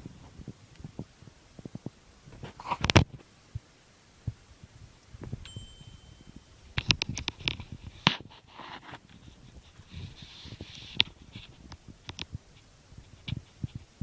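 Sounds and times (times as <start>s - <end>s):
microwave oven beeping: 5.4s - 7.2s.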